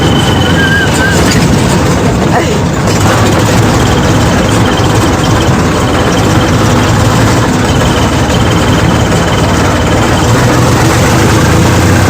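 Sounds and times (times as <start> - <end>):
high turbo whistle: 0.0 - 1.2
tractor diesel engine running: 0.0 - 12.0.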